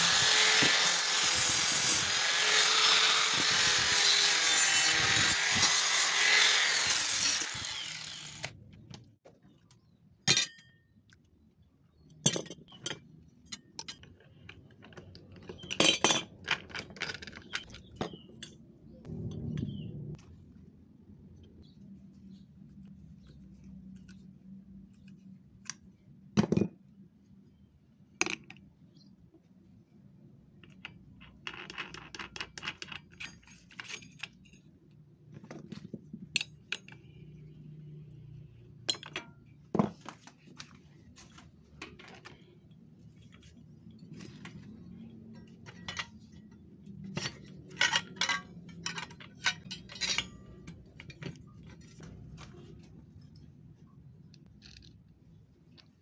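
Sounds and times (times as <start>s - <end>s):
metal parts and tools clinking: 12.2s - 19.8s, 43.2s - 52.1s.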